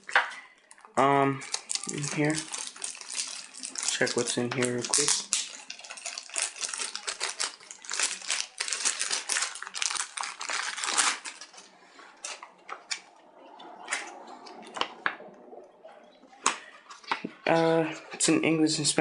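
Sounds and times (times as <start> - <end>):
paper and plastic crinkling: 0.0 - 13.1.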